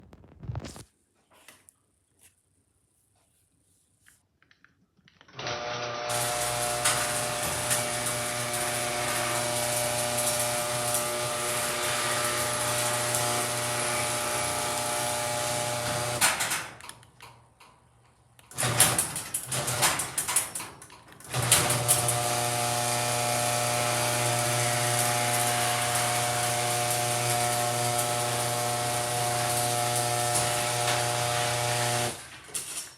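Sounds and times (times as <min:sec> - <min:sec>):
electric motor humming and whining: 0:05.8 - 0:16.2, 0:21.5 - 0:32.2.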